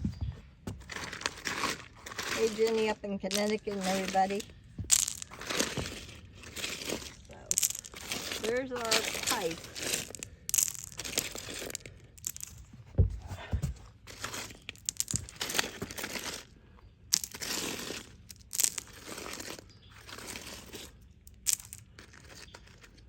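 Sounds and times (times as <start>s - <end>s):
dull low thumps: 0.0s - 0.9s, 12.7s - 13.9s
gravel crunching and scraping: 0.0s - 23.0s.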